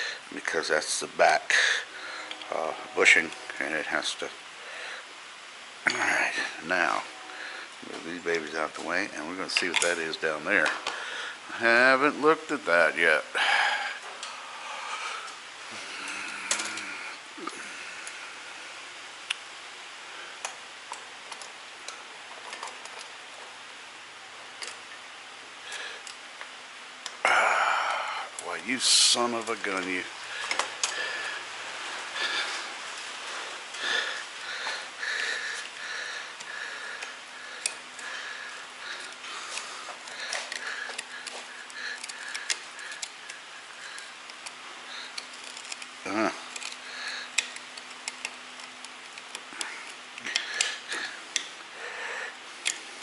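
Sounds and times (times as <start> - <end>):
faint steady hum: 0.0 - 53.0
steady hiss: 0.0 - 53.0
clicks of metal parts and tools: 9.6 - 10.0
tools clicking and tapping: 46.5 - 51.7, 52.6 - 53.0.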